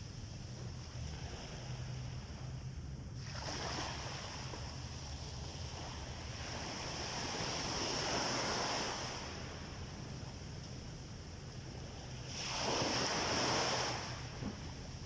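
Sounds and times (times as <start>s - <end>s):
sea waves breaking on beach: 3.2s - 15.0s.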